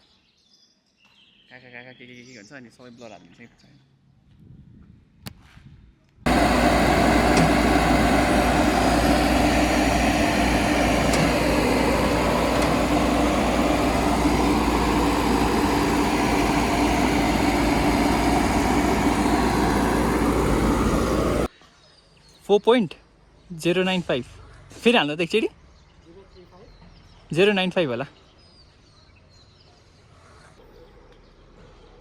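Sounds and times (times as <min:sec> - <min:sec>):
engine running steadily: 0:06.3 - 0:21.5.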